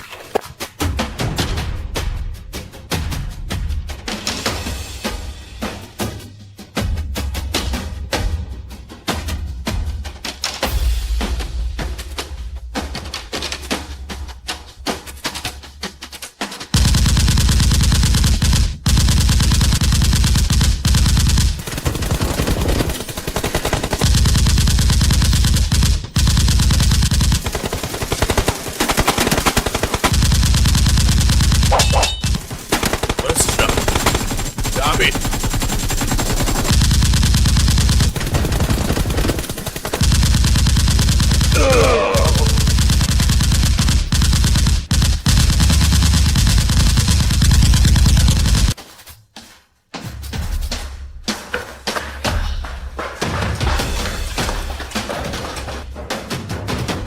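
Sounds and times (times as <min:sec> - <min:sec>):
machine-gun fire: 0:16.7 - 0:48.8.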